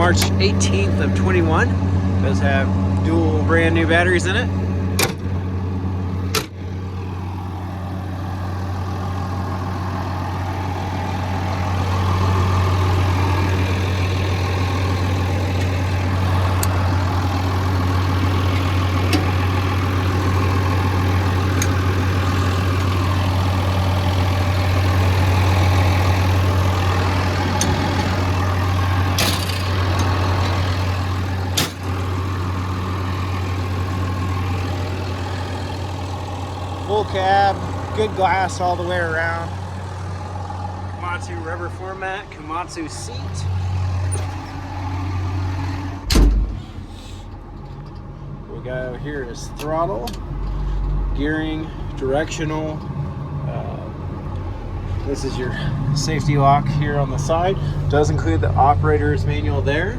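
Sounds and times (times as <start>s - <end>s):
bulldozer diesel engine idling: 0.0s - 59.9s
sharp clicks and knocks: 5.0s - 5.4s, 6.3s - 6.6s, 27.5s - 28.3s, 29.2s - 30.7s.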